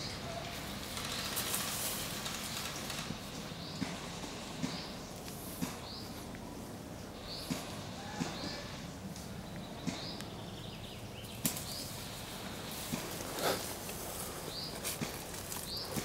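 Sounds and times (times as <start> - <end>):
footsteps through undergrowth: 11.3 - 16.0.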